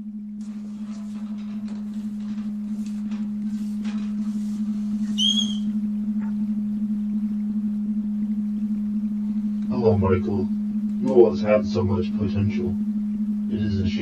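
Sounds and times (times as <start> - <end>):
steady low hum with flutter: 0.0 - 14.0
brief high squeak: 5.1 - 5.7.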